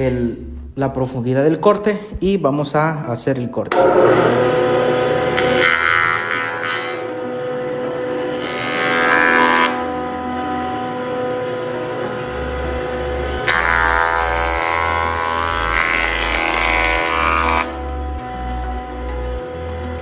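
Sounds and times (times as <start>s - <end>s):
board being cut by cutterhead: 3.7s - 18.8s
jointer motor hum: 3.8s - 20.0s.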